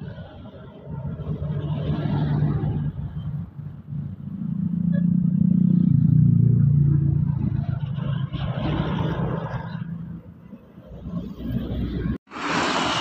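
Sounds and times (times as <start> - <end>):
bus engine driving past: 11.4 - 13.0.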